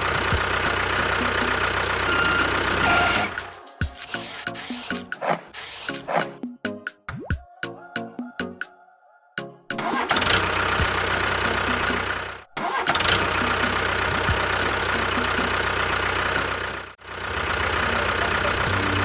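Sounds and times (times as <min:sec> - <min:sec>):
engine running: 0:00.0 - 0:03.6, 0:09.8 - 0:19.0.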